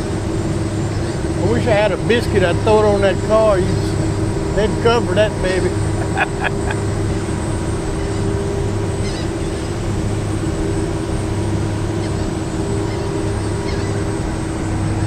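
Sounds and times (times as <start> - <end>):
ferry engine drone: 0.0 - 15.0
faint gull calls: 7.9 - 9.7, 11.9 - 14.2.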